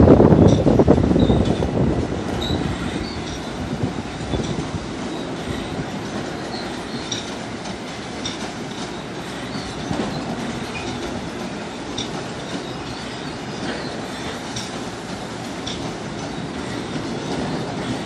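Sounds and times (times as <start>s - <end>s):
train wheels rumbling on rails: 0.0s - 18.0s
high wheel squeals: 2.3s - 3.6s, 8.7s - 14.7s.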